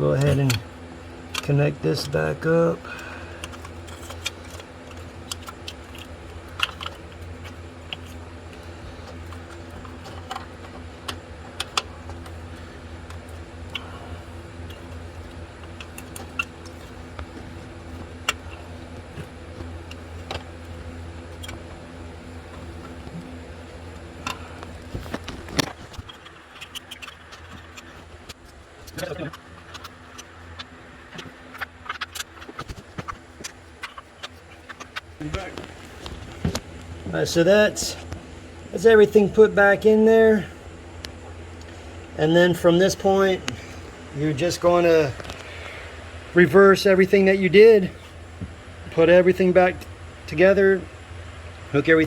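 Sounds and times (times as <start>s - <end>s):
steady low hum: 0.0s - 52.0s
hand tools clicking and tapping: 2.8s - 21.9s, 23.9s - 36.6s.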